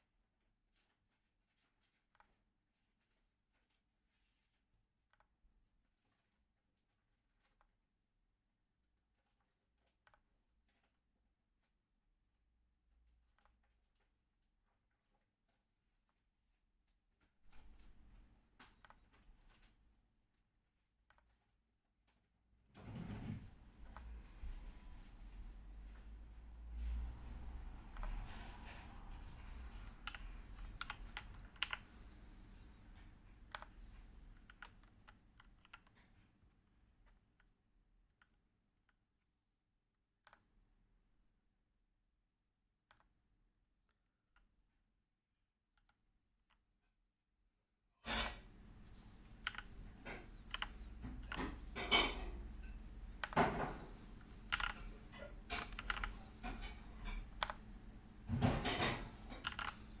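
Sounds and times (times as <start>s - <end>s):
mechanical keyboard keystrokes: 29.8s - 32.2s, 49.4s - 49.8s, 50.4s - 51.6s, 54.3s - 56.3s, 58.8s - 60.0s.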